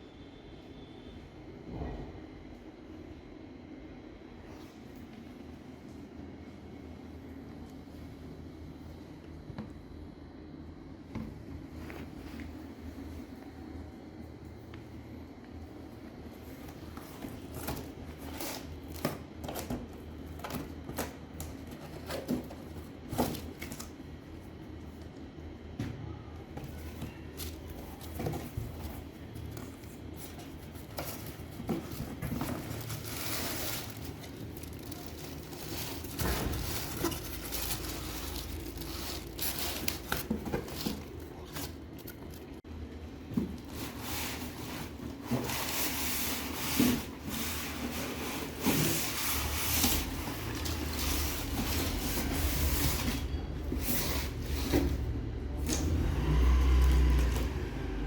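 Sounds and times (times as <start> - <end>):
rubbing and scraping of handling: 26.6 - 42.6, 43.5 - 55.1.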